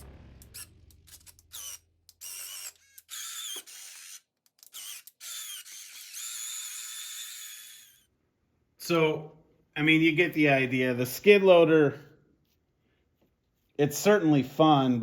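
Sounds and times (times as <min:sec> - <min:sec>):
small electric motors whining: 0:00.4 - 0:08.1.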